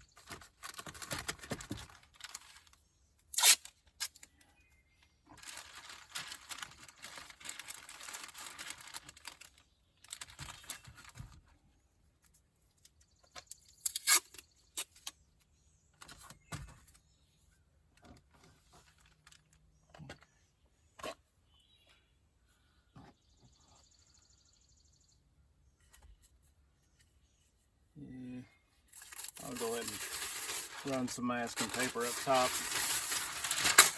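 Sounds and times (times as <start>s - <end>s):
masking tape pulled off roll: 3.3s - 4.2s, 13.8s - 15.1s.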